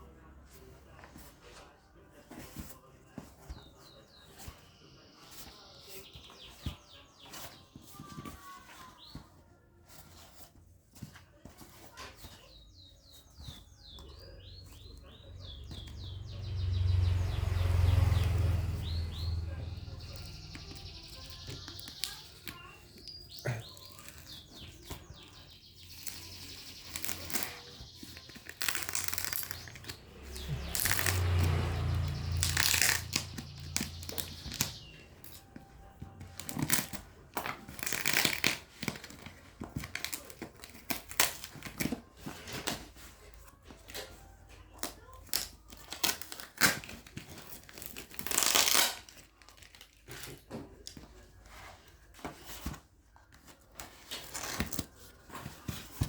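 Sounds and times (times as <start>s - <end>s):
packaging rustling and tearing: 25.8s - 30.0s, 36.4s - 43.0s, 45.2s - 50.5s.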